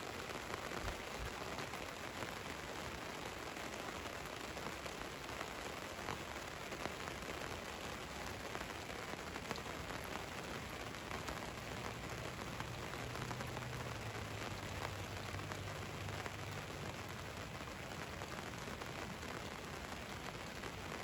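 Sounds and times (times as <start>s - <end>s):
rain on a van roof: 0.0s - 21.0s.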